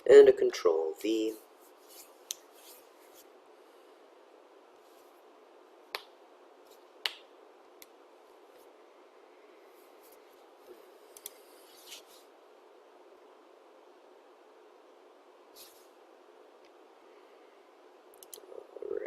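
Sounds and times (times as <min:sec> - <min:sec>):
faint steady hiss: 0:00.0 - 0:19.0
computer mouse clicks: 0:18.2 - 0:18.5.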